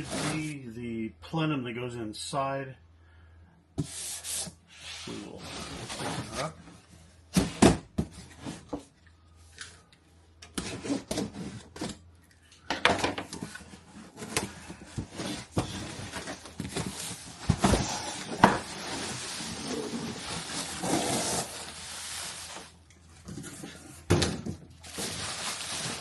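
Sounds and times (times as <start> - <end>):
cardboard box being unpacked: 13.4 - 23.8, 24.8 - 26.0.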